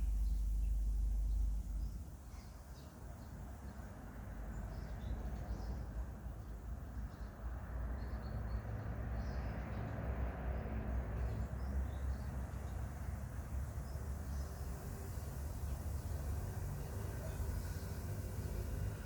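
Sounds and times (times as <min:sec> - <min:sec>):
hiss: 0:13.2 - 0:19.0.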